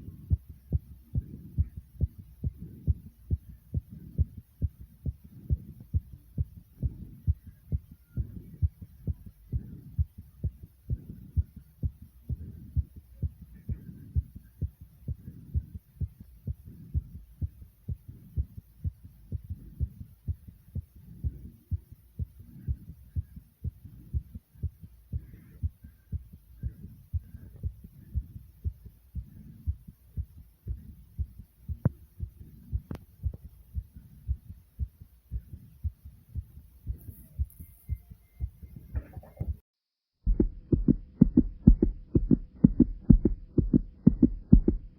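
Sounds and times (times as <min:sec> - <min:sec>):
fast heartbeat thumps: 0:00.0 - 0:39.6, 0:40.2 - 0:44.9.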